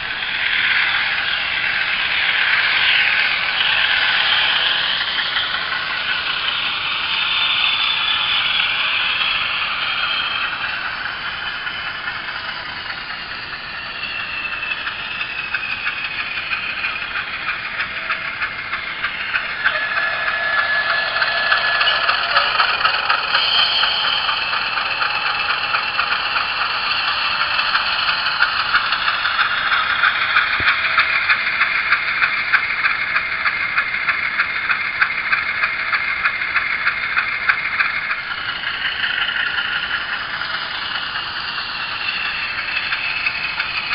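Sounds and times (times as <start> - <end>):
thin diesel engine sound: 0.0 - 43.9.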